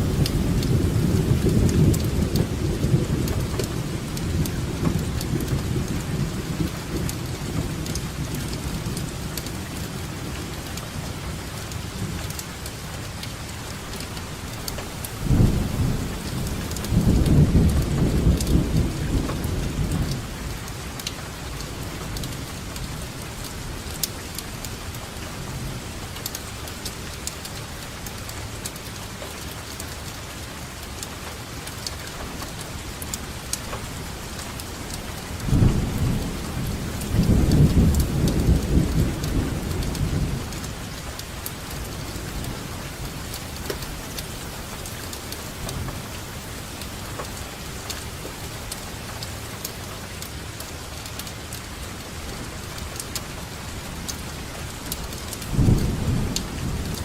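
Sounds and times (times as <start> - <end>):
raindrops ticking: 0.0 - 57.0
steady rain falling: 0.0 - 57.0
rolling thunder: 15.2 - 20.3, 35.4 - 44.1, 55.5 - 57.0
thunder clap: 55.5 - 57.0.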